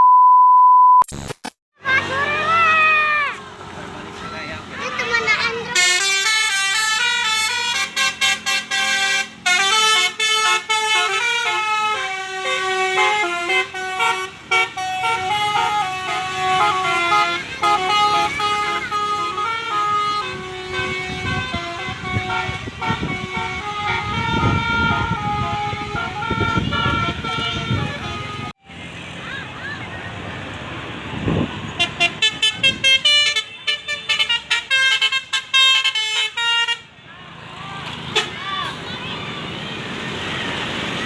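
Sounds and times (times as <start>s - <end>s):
bus musical horn melody: 5.7s - 28.6s, 31.7s - 37.0s, 38.1s - 38.4s.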